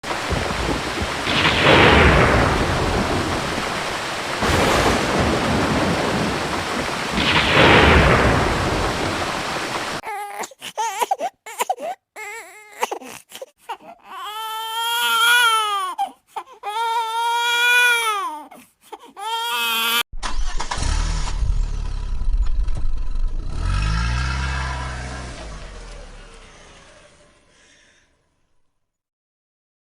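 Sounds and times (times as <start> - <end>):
thunder claps: 0.0 - 10.0
thunder rumbling: 0.0 - 10.0
baby crying: 10.0 - 20.0
vehicle engine revving: 20.4 - 27.4.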